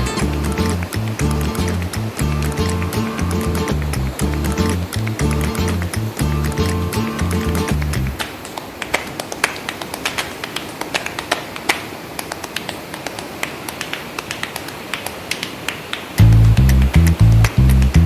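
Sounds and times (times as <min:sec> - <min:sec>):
music: 0:00.0 - 0:08.2, 0:16.2 - 0:18.0
soft hiss: 0:00.0 - 0:08.4
sharp clicks and taps: 0:00.1 - 0:09.4, 0:16.2 - 0:18.0.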